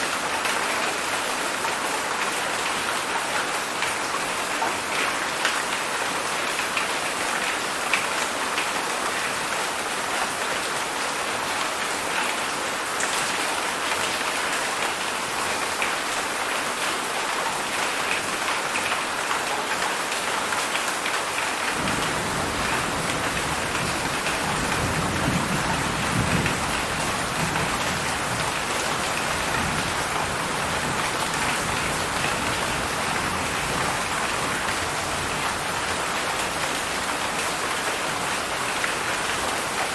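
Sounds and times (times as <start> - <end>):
heavy rain falling: 0.0 - 39.9
thunder rumbling: 21.8 - 31.0.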